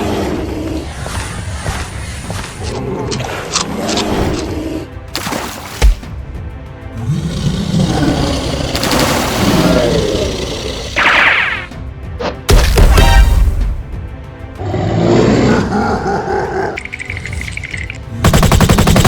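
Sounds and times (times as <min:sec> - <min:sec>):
background music: 0:00.0 - 0:19.0
rapid crackling shots: 0:08.7 - 0:09.6, 0:18.2 - 0:19.0.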